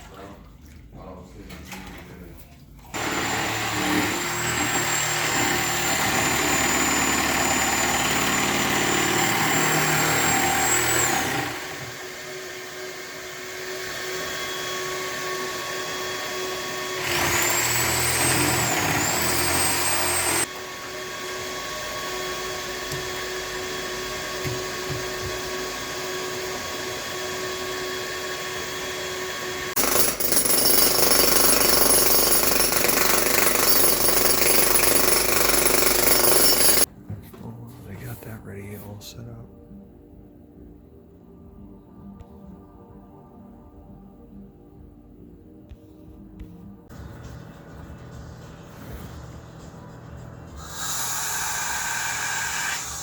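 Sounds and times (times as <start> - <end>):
jackhammer breaking concrete: 3.0 - 12.2, 16.8 - 20.5, 29.8 - 36.9.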